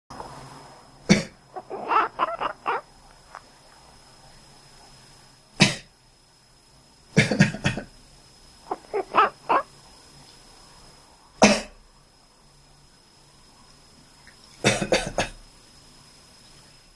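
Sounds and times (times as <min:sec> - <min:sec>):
cat quacking calls: 0:01.1 - 0:02.8, 0:08.7 - 0:09.7
person coughing: 0:11.4 - 0:11.8, 0:14.7 - 0:15.4.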